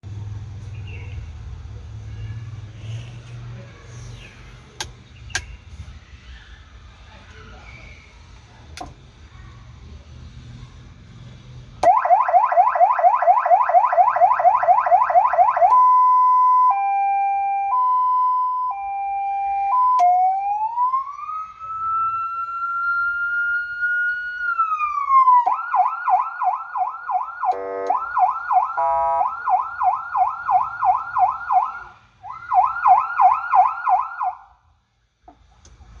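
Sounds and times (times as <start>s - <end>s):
electronic ambulance siren: 11.8s - 34.5s
short horn blasts: 27.5s - 28.1s, 28.7s - 29.4s.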